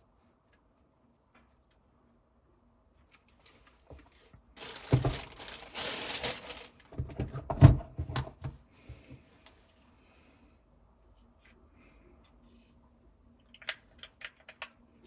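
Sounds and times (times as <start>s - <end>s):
packaging crinkling and rustling: 4.6s - 6.8s.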